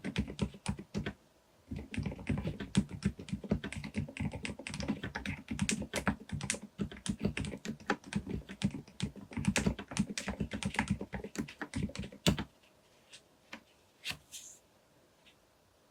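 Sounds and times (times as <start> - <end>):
fast typing on mechanical keyboard: 0.0 - 12.5.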